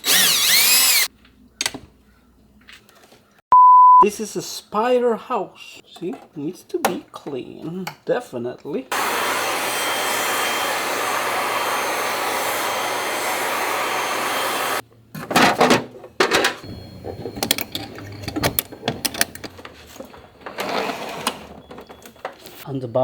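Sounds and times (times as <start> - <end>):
electric motor rushing: 0.0 - 1.1, 8.9 - 14.8
clicks and clatter of parts: 15.2 - 22.6.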